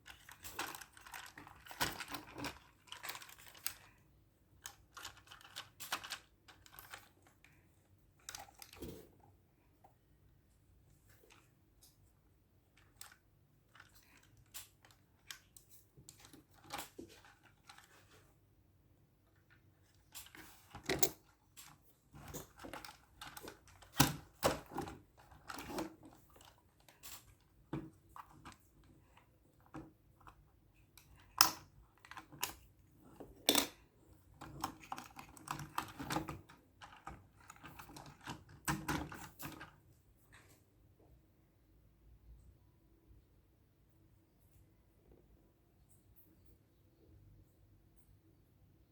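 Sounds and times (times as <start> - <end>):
hands handling plastic toy: 0.0 - 9.2, 10.9 - 18.4, 19.3 - 40.6.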